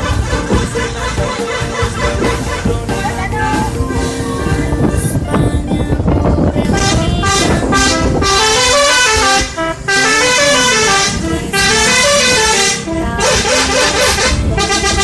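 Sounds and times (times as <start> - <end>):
bus horn melody: 6.6 - 15.0.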